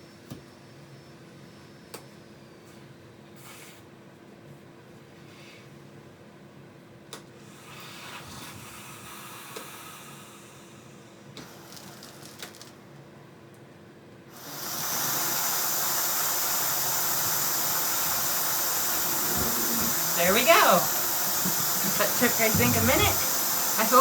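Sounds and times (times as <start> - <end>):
vacuum unit running: 14.3 - 24.0.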